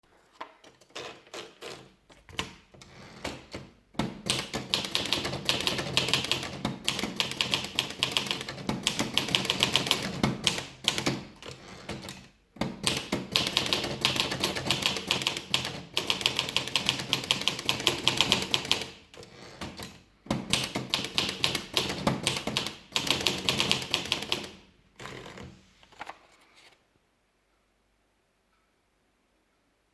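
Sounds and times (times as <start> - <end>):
manual typewriter typing: 0.7 - 25.5.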